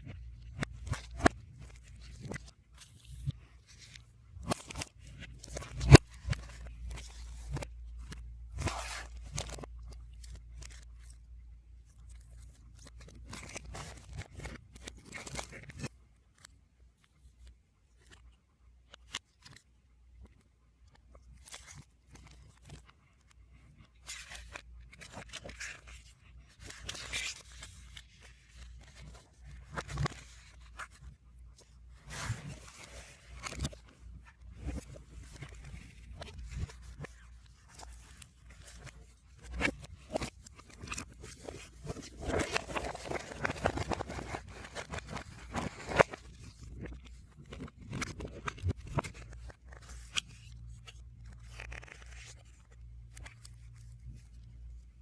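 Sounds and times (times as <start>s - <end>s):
packaging rustling and crinkling: 32.0s - 54.4s.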